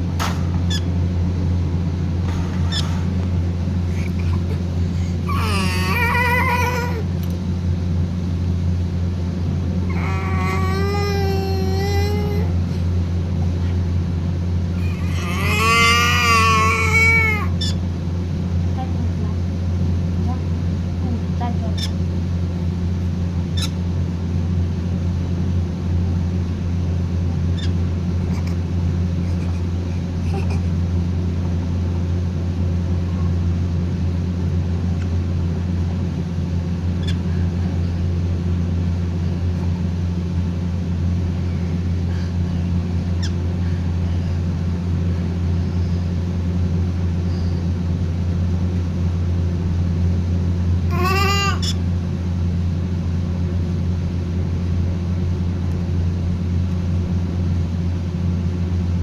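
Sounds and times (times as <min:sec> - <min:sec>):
low mechanical hum: 0:00.0 - 0:59.0
faint parrot chirps: 0:00.7 - 0:00.9, 0:02.6 - 0:03.0, 0:21.8 - 0:22.0, 0:27.6 - 0:27.8, 0:37.0 - 0:37.3.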